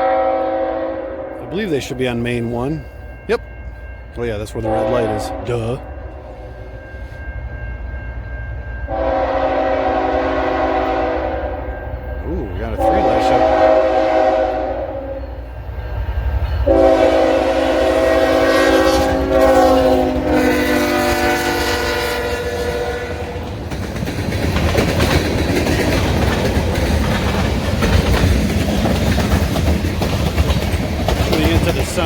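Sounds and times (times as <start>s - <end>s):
train horn chord: 0.0s - 1.9s, 4.6s - 6.4s, 8.9s - 15.5s, 16.6s - 23.4s
wheels clacking on rails: 1.4s - 6.4s, 7.0s - 32.0s
freight cars rumbling: 12.2s - 13.7s, 22.4s - 32.0s.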